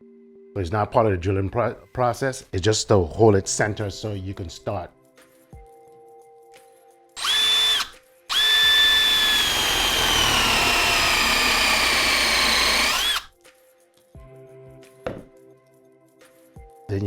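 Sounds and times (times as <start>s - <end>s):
power drill motor whine: 7.2s - 13.3s.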